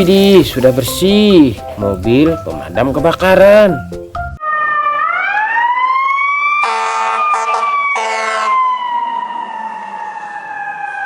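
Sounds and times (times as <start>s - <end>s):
fire engine siren wailing: 4.4s - 11.0s
horn blasts: 6.6s - 8.6s.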